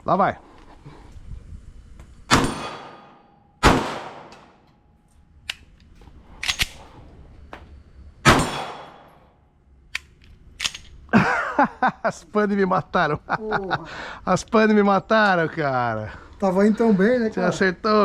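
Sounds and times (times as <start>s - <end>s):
pistol shots with echo: 2.3s - 4.6s, 8.2s - 9.2s
sharp clicks: 9.9s - 11.0s.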